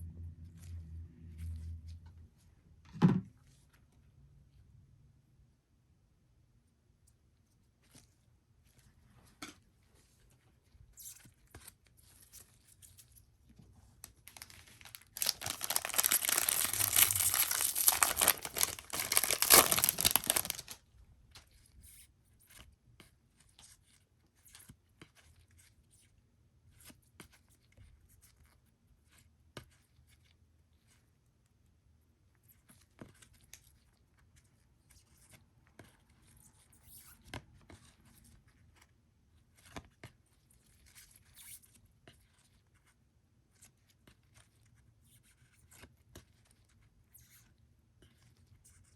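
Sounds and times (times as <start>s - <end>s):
wrapper tearing and crinkling: 14.2s - 20.8s
cards clicking and rustling: 14.3s - 20.8s.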